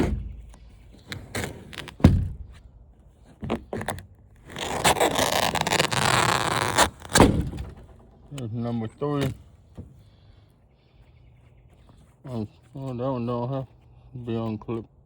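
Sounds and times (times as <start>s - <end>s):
wire scraping: 3.8s - 8.5s.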